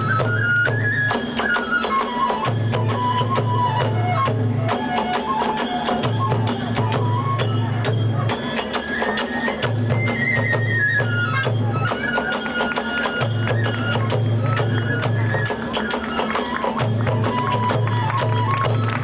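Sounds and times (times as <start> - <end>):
bamboo flute melody: 0.0 - 19.0
fast drum beats: 0.0 - 19.0
small hand cymbals clashing: 5.0 - 10.6, 11.4 - 19.0.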